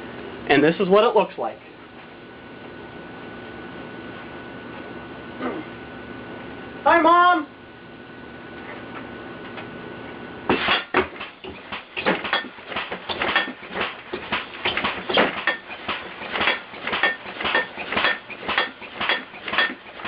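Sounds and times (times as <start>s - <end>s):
steady hum: 0.0s - 20.0s
rapid clanging of struck metal: 10.5s - 20.0s.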